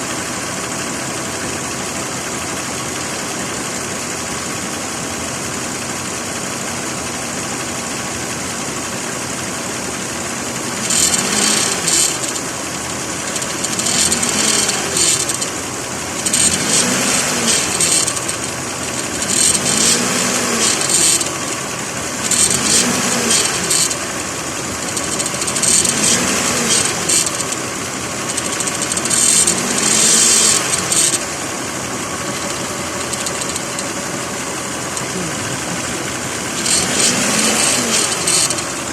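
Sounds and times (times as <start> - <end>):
car engine idling: 0.0 - 38.9
metal grinding: 10.8 - 12.5, 13.2 - 15.5, 16.1 - 38.9.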